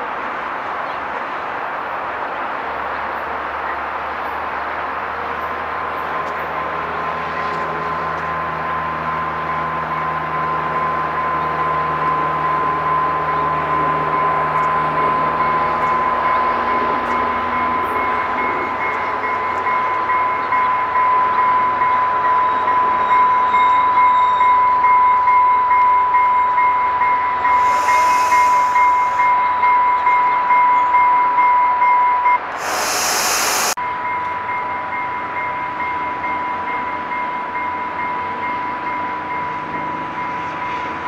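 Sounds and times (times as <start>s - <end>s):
train rhythmic clatter: 0.0s - 41.0s
constant high tone: 26.9s - 31.1s, 32.4s - 34.4s
loud hiss: 27.5s - 29.3s, 32.5s - 33.8s.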